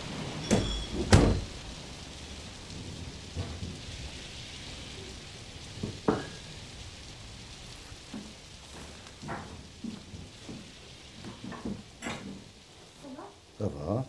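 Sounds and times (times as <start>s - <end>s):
steady rain: 0.0s - 14.0s
sharp knocks of drips: 5.8s - 6.5s, 7.6s - 12.5s.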